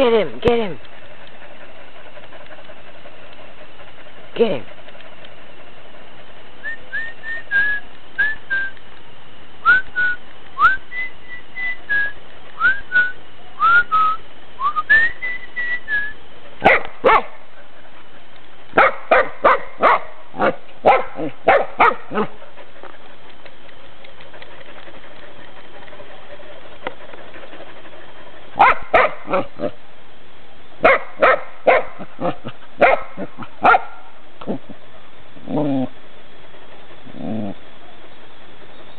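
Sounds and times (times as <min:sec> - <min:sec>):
dog barking: 0:16.6 - 0:17.4, 0:18.8 - 0:22.4, 0:28.6 - 0:29.7, 0:30.8 - 0:34.1.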